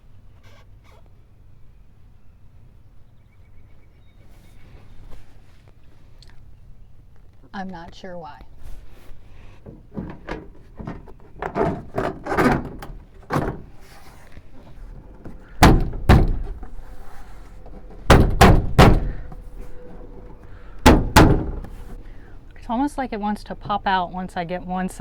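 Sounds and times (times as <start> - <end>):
hand banging on door panel: 9.7 - 14.0, 14.6 - 20.2, 20.8 - 22.0.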